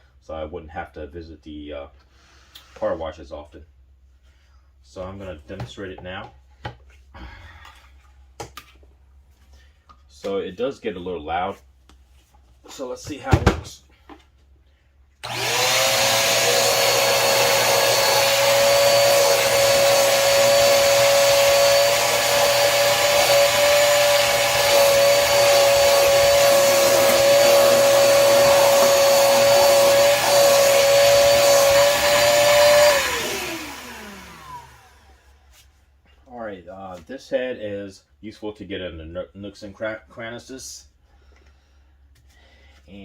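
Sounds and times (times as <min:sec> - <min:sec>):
shop vacuum motor whining: 0:15.2 - 0:35.4.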